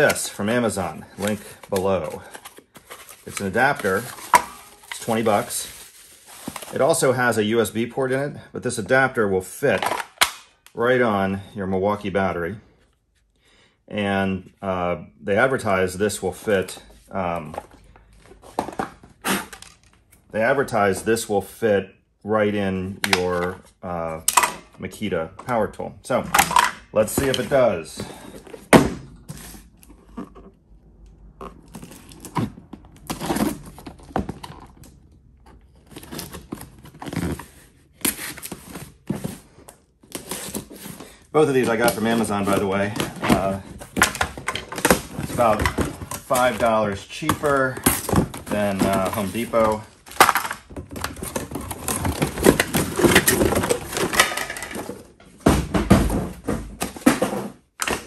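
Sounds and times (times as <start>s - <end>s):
rustling: 1.2s - 6.8s.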